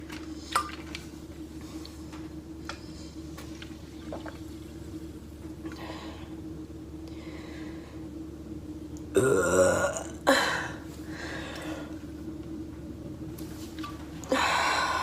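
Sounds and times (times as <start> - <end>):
steady low hum: 0.0 - 15.0
person gulping water: 4.0 - 4.4.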